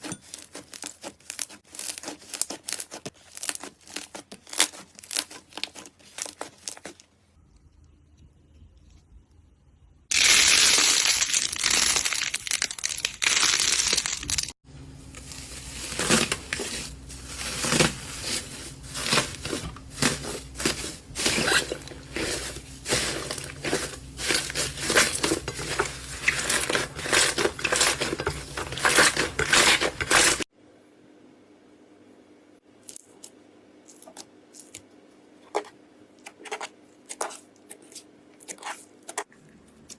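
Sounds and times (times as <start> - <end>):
slime crinkling and crackling: 0.0 - 7.1, 10.1 - 30.5.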